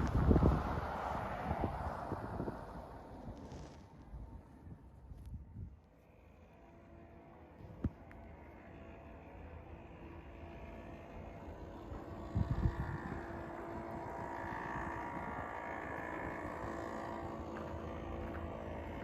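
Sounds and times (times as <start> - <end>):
vehicle passing: 0.0 - 3.8
wind buffeting microphone: 0.0 - 5.8, 11.6 - 19.0.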